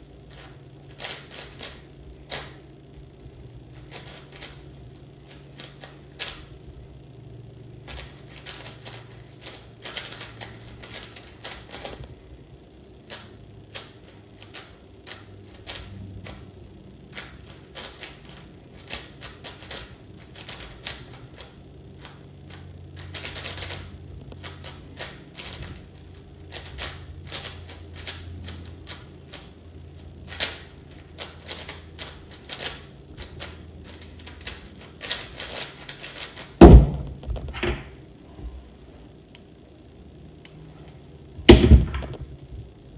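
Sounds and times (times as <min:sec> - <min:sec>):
speed cube plastic clicks: 0:00.3 - 0:02.6, 0:03.8 - 0:04.6, 0:05.3 - 0:06.5, 0:07.8 - 0:12.1, 0:13.1 - 0:16.4, 0:17.1 - 0:29.5, 0:30.3 - 0:36.6
loud thump: 0:36.6 - 0:37.9, 0:41.5 - 0:42.3.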